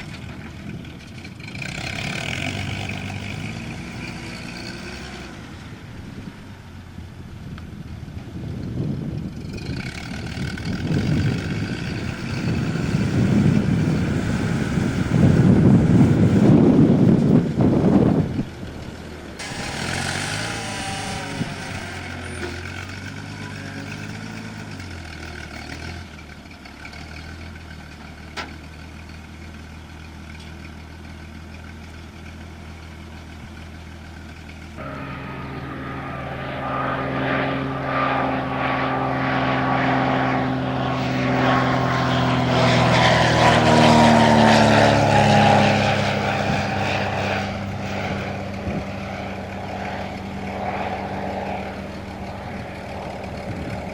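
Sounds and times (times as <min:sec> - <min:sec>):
propeller plane engine droning: 0:00.0 - 0:53.9.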